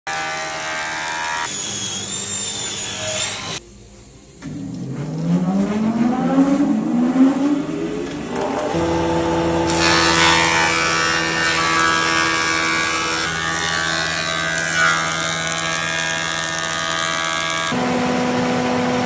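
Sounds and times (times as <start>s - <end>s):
high-pitched power tool whine: 0.1s - 3.6s, 8.3s - 19.0s
power tool motor hum: 0.1s - 3.6s, 8.4s - 17.9s
motor pitch rising: 4.5s - 19.0s.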